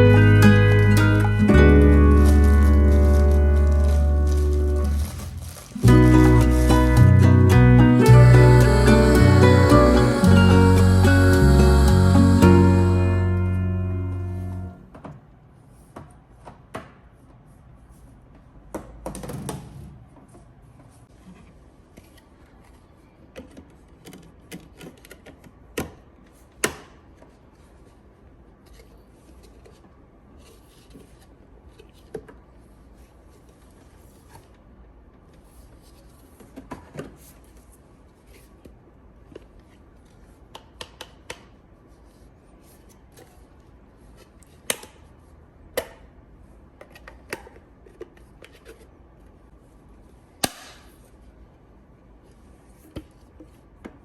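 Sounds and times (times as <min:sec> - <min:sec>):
handling packaging clicks and rubbing: 0:00.2 - 0:07.4.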